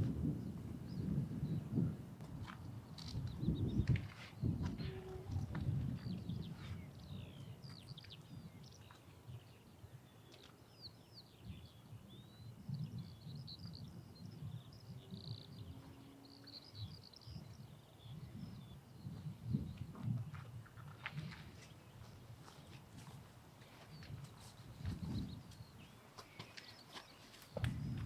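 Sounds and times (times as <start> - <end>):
small birds chirping: 2.5 - 28.0.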